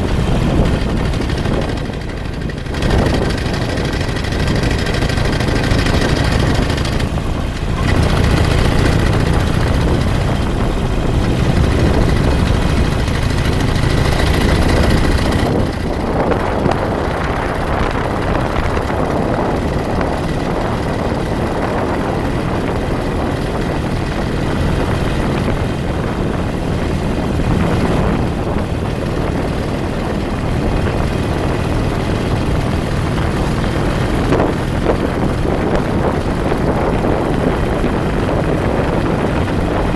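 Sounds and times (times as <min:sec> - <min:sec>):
vehicle engine and road rumble: 0:00.0 - 0:39.9
wind buffeting microphone: 0:00.0 - 0:39.9.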